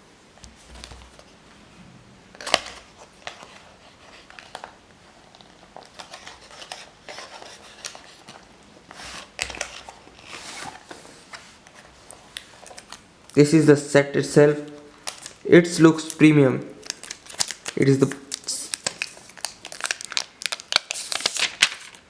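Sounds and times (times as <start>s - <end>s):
cardboard scraping and rustling: 8.9s - 12.2s.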